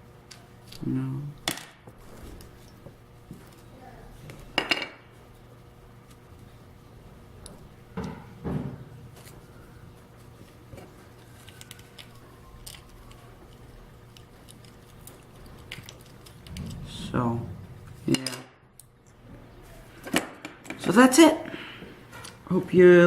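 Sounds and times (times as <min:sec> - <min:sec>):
faint low hum: 0:09.0 - 0:20.2
plastic parts clicking: 0:11.5 - 0:16.7.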